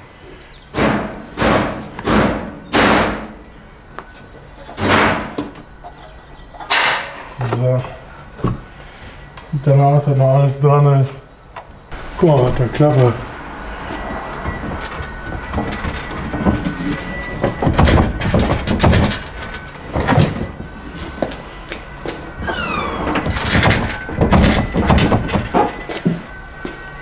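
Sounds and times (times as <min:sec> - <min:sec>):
car tailgate rattling and clunking: 0:14.2 - 0:20.8, 0:22.4 - 0:26.3
short falling squeak: 0:22.4 - 0:24.1.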